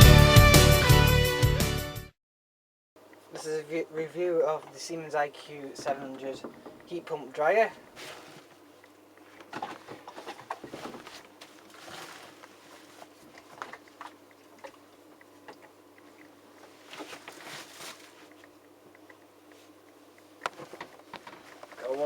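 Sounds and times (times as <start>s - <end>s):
low steady hum: 3.0s - 22.0s
handling clicks and rustles: 4.4s - 22.0s.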